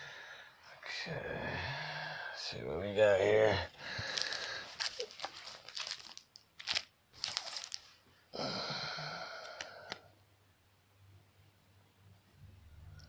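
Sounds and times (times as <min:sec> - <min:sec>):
wrapper crinkling: 0:04.0 - 0:08.0
wrapper ripping: 0:04.0 - 0:08.0.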